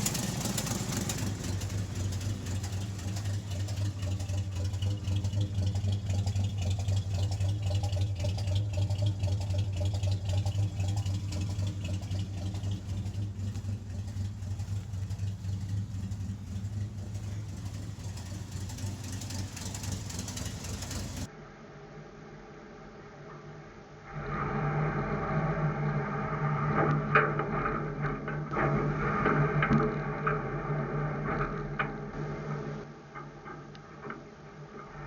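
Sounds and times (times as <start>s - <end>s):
truck engine running: 0.0s - 21.3s.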